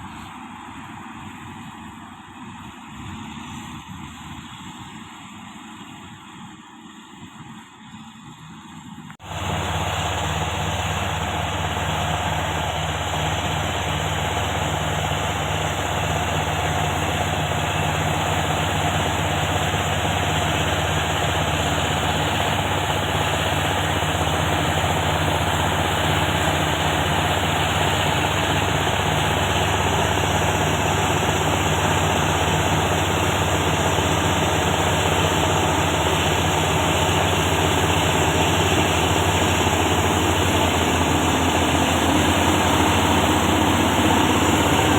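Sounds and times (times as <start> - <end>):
bulldozer diesel engine running: 0.0 - 44.9.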